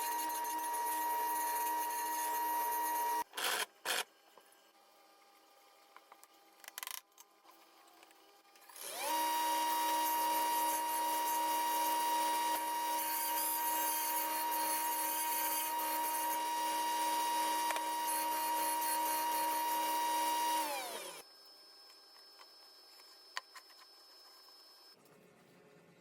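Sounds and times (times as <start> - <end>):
table saw motor whining: 0.0 - 3.3, 8.7 - 22.4.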